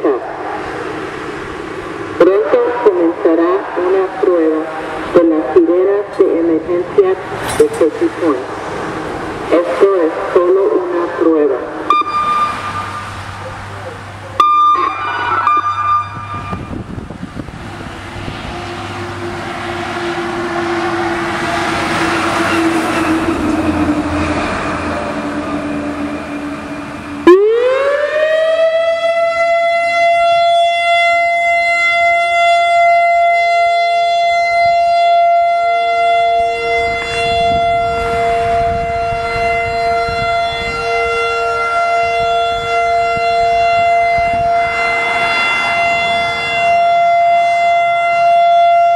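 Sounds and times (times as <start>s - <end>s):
rush of noise: 0.0s - 27.5s
lower siren tone: 0.0s - 48.9s
electronic warning siren: 1.8s - 48.9s.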